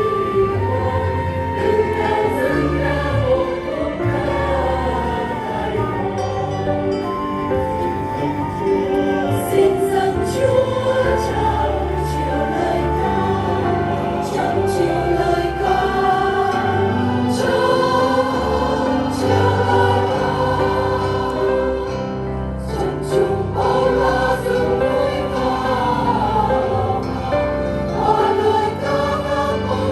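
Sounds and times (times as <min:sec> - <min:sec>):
choir singing layered chords: 0:00.0 - 0:29.9.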